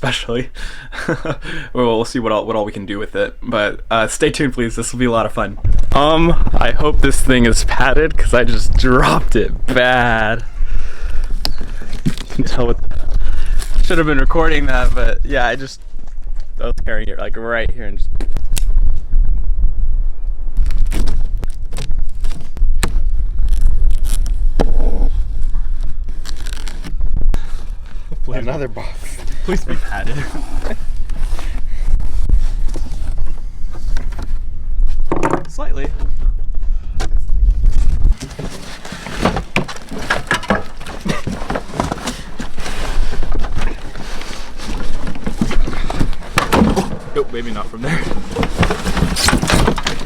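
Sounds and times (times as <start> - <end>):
steady low rumble: 3.6 - 11.9, 14.0 - 35.1, 35.7 - 38.2
low rumble: 35.8 - 38.2
cardboard box scraping and crackling: 38.1 - 50.0.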